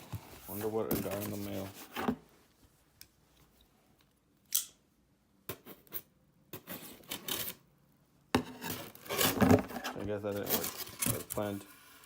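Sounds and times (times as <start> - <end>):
cardboard box opening: 0.0 - 2.2, 8.4 - 11.6.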